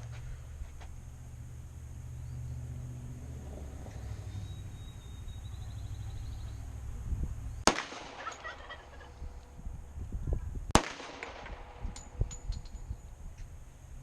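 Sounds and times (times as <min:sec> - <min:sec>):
pistol shots with echo: 0:07.6 - 0:09.0, 0:10.7 - 0:12.4.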